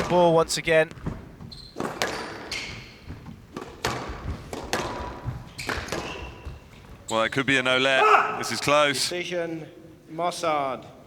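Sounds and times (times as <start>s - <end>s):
ball thudding off walls: 0.0s - 7.1s
racket striking ball: 0.0s - 7.1s
shoe squeaks on court floor: 0.0s - 8.6s.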